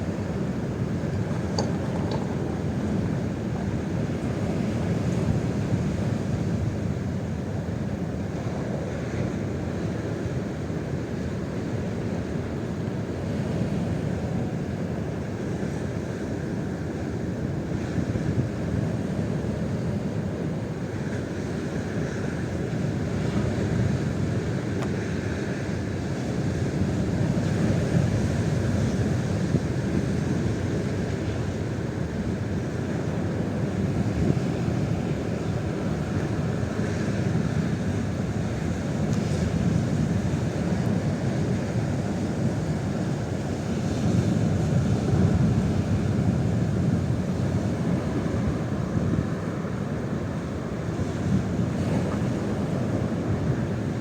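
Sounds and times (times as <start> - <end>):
strong wind on microphone: 0.0 - 7.2.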